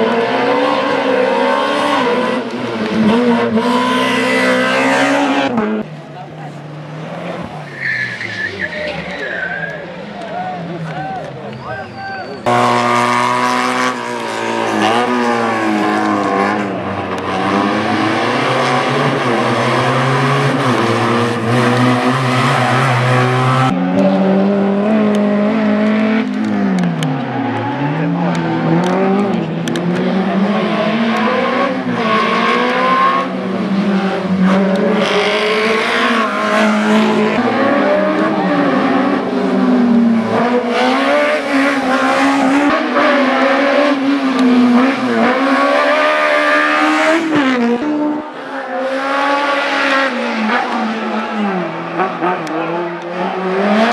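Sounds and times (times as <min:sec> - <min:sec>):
race car engine revving: 0:12.4 - 0:53.9.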